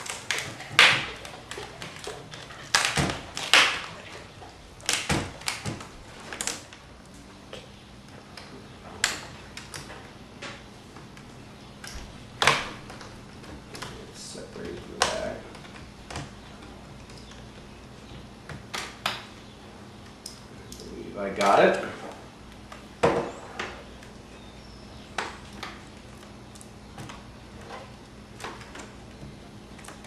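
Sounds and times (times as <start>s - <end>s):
plastic clips snapping: 0.0s - 4.2s, 4.8s - 6.8s, 8.3s - 17.4s.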